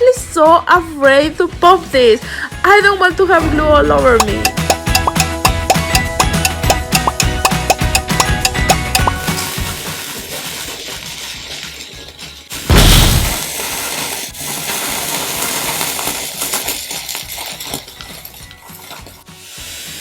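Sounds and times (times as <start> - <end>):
background music: 0.0 - 15.0, 16.4 - 20.0
firework bang: 12.7 - 13.6.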